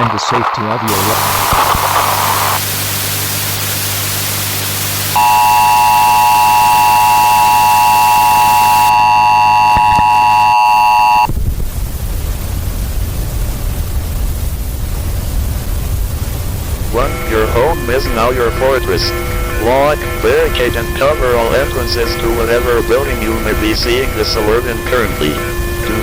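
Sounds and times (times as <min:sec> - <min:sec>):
harsh static hiss: 0:00.0 - 0:26.0
low steady hum: 0:05.1 - 0:26.0
electronic alert tone: 0:17.0 - 0:26.0.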